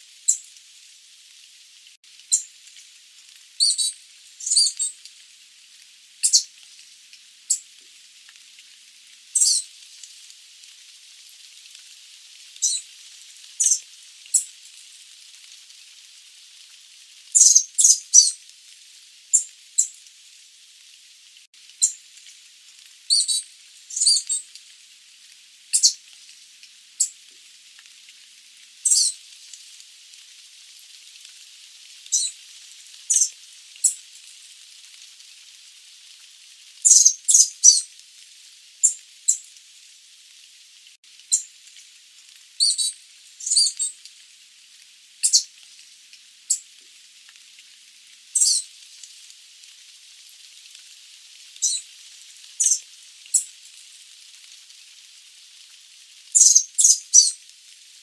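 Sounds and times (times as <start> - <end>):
faint steady hiss: 0.0 - 58.0
high-pitched bird calls: 3.6 - 5.0, 6.2 - 6.5, 9.4 - 9.6, 12.6 - 12.8, 13.6 - 13.8, 17.4 - 18.4, 23.1 - 24.4, 25.8 - 26.0, 28.9 - 29.2, 33.1 - 34.0, 36.9 - 37.8, 42.6 - 43.9, 45.2 - 45.5, 48.4 - 48.6, 51.6 - 51.8, 52.6 - 52.8, 56.4 - 57.4.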